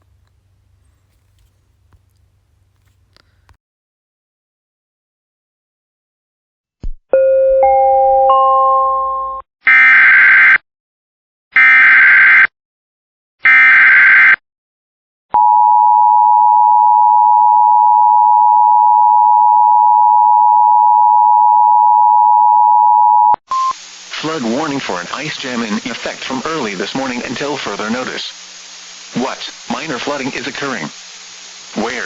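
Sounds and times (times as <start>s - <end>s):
data tone bursts: 23.5s - 23.8s.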